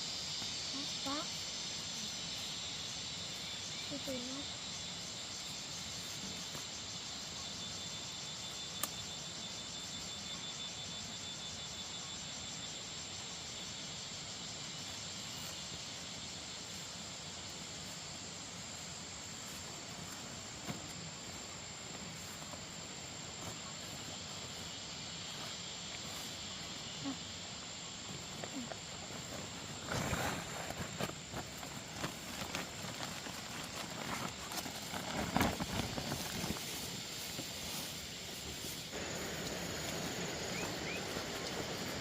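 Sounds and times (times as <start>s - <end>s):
insects trilling: 0.0s - 42.0s
pulsing chirp: 39.0s - 42.0s.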